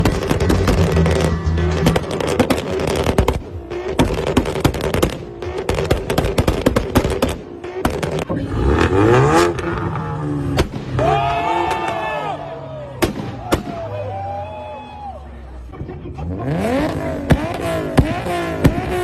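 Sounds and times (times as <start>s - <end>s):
engine revving: 0.0s - 12.0s, 16.0s - 19.0s
car exhausts popping and crackling: 0.0s - 12.1s, 15.6s - 19.0s.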